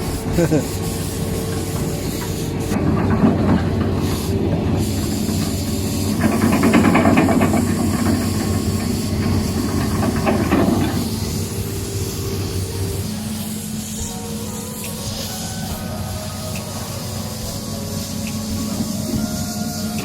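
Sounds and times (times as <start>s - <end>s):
excavator engine drone: 0.0s - 20.0s
hiss: 0.0s - 20.0s
dense clattering: 1.2s - 14.7s.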